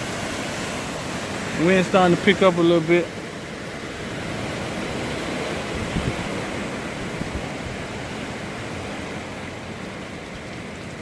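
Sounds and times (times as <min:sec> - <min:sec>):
strong wind hissing: 0:04.0 - 0:09.1
wind buffeting microphone: 0:04.0 - 0:11.0.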